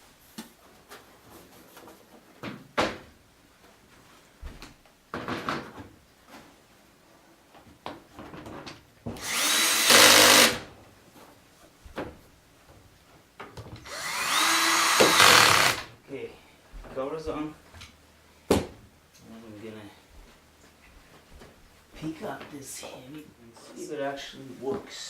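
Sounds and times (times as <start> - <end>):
power screwdriver whining: 9.2 - 10.6, 13.8 - 15.9.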